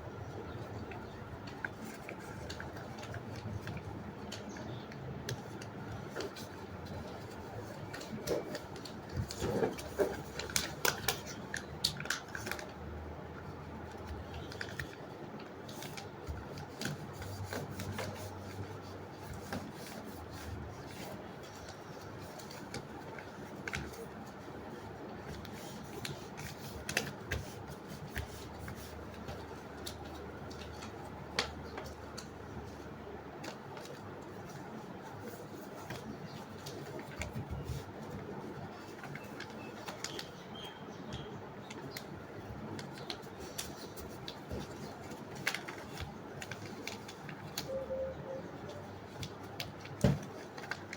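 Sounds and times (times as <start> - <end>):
paper being folded and creased: 0.5 - 50.9.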